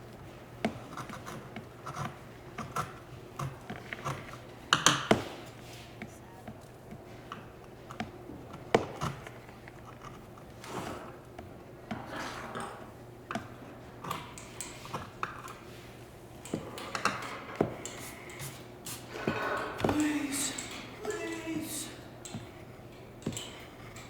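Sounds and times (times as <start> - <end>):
hand tools tapping and scraping: 0.6 - 24.0.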